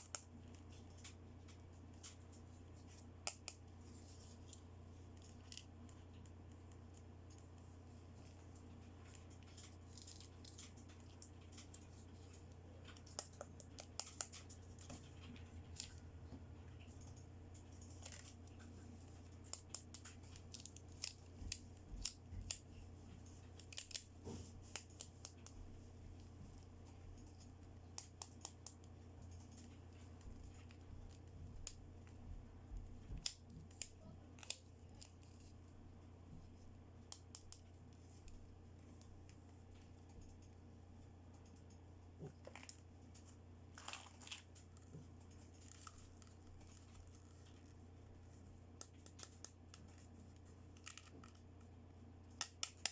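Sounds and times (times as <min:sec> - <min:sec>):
faint low hum: 0:00.0 - 0:52.9
plastic toy packaging handled: 0:03.8 - 0:16.0, 0:42.3 - 0:51.5.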